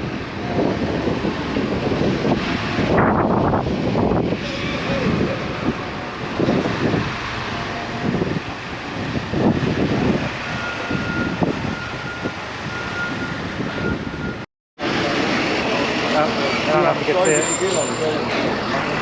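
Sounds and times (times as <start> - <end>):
traffic running: 0.0 - 19.0
indistinct voices: 15.0 - 19.0
faint high beep: 17.2 - 18.3.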